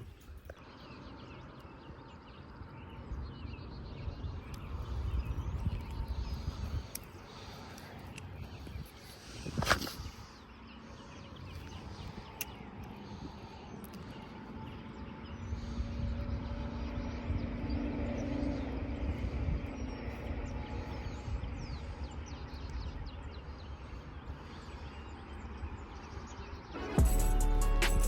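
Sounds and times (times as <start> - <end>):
distant engine passing by: 12.2 - 22.1.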